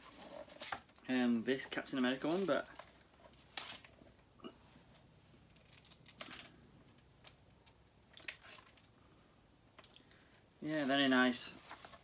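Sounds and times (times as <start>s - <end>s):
book page turning rustle: 0.0s - 4.0s, 10.7s - 12.0s.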